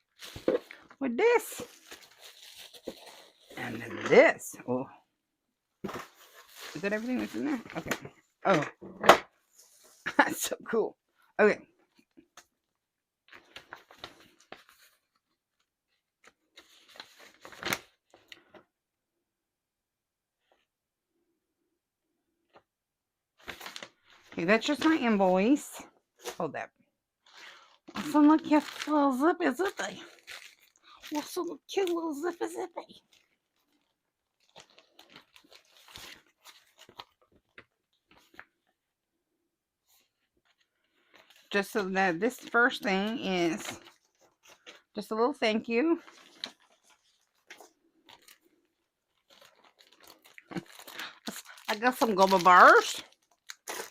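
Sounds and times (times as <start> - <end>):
packaging crinkling and rustling: 1.6 - 3.6, 5.8 - 8.2, 13.2 - 18.6, 23.4 - 25.6, 27.2 - 38.8, 39.9 - 44.9, 46.0 - 53.9
sharp packaging crackle: 29.6 - 31.4, 33.0 - 37.6, 46.0 - 53.9.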